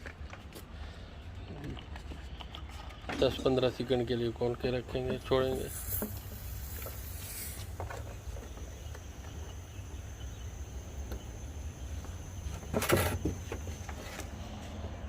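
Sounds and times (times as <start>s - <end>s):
high-pitched gas hiss: 5.2s - 13.8s.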